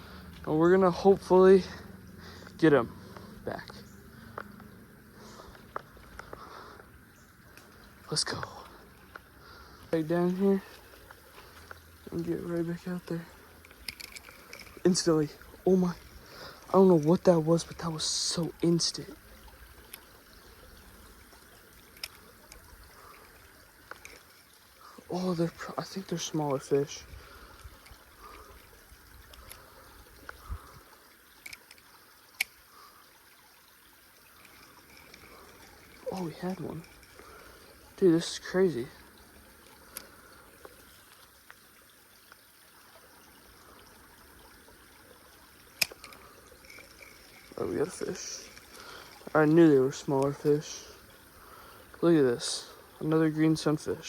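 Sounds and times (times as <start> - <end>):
creek water trickling: 0.0 - 54.0
faint sharp clicks: 7.5 - 9.3
small sharp clicks: 31.4 - 32.6.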